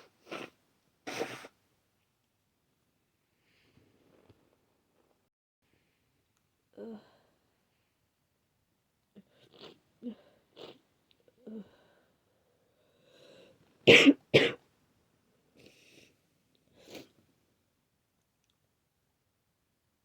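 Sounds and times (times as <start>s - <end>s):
person coughing: 13.9s - 14.6s.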